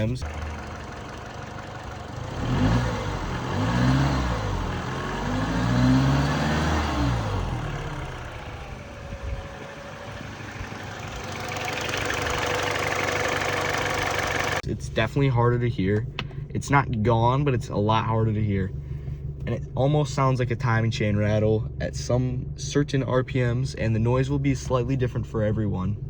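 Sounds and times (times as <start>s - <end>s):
car engine revving: 0.0s - 14.6s.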